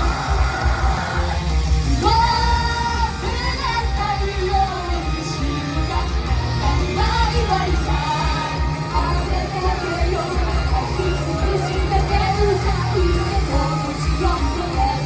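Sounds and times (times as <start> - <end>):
person singing: 0.0 - 15.0
pop-rock backing track with heavy bass: 0.0 - 15.0.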